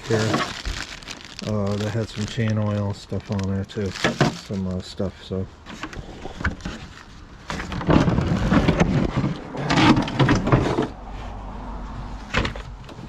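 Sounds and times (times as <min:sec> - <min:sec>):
objects clattering and rustling: 0:00.0 - 0:04.8, 0:05.6 - 0:11.0.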